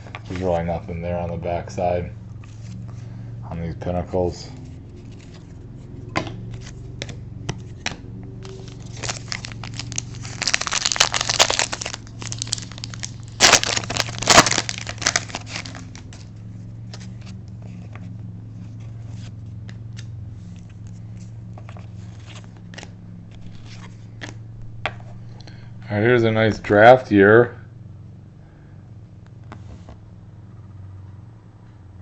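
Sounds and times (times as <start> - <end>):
card pack wrapper crinkling and tearing: 8.4 - 16.3.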